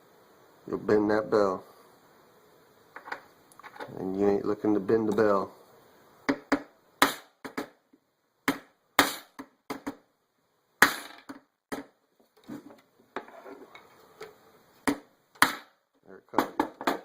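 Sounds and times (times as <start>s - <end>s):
soft metal scraping: 12.4s - 14.3s.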